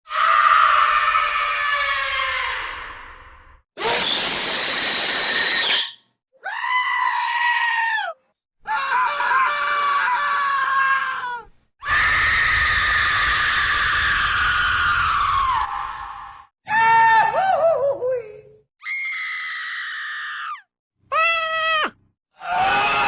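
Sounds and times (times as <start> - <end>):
harsh noisy scream: 0.1 - 17.2, 18.8 - 23.0
pitched screaming wails: 6.4 - 16.4.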